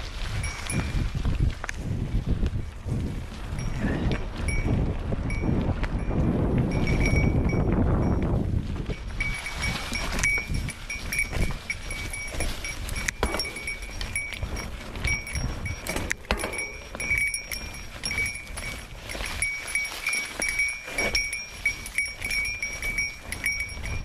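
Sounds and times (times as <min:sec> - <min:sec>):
bike rumbling on rough trail: 0:00.0 - 0:24.0
small bell ringing: 0:04.5 - 0:08.2, 0:09.0 - 0:24.0.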